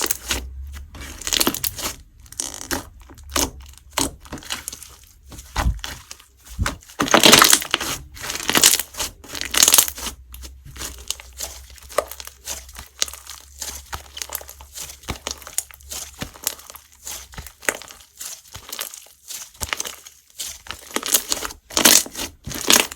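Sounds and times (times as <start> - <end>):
slime squeezed with sticky pops: 0.0 - 4.8.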